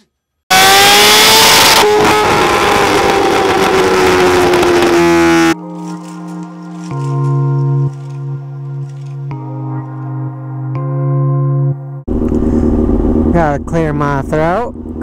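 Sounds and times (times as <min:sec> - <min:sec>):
motorcycle engine at high revs: 0:00.5 - 0:05.6, 0:12.1 - 0:15.0
music with held notes: 0:05.6 - 0:12.1.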